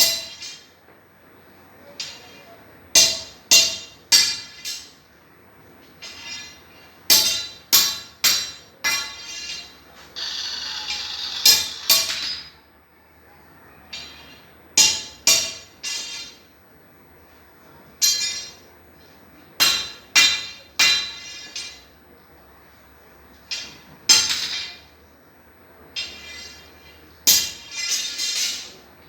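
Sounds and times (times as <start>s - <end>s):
hammer striking steel: 0.0s - 0.8s, 3.0s - 5.0s, 6.0s - 12.6s, 13.9s - 16.5s, 18.0s - 18.7s, 19.6s - 21.9s, 23.5s - 24.9s, 26.0s - 28.8s.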